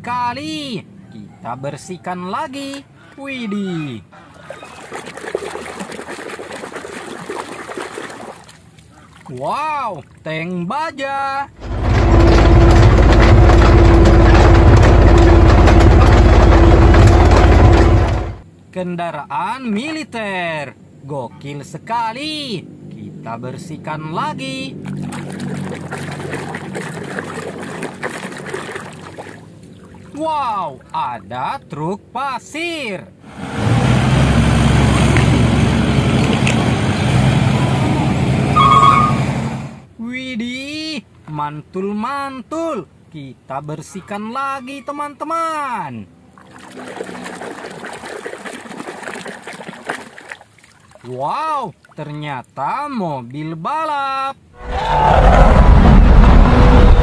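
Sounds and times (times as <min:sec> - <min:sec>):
tank engine idling: 0:11.6 - 0:18.4, 0:33.4 - 0:39.8
short high tone: 0:38.6 - 0:39.4.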